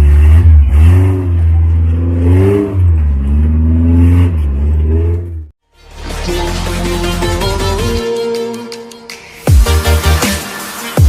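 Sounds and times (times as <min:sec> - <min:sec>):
jeep engine revving: 0:00.0 - 0:05.5.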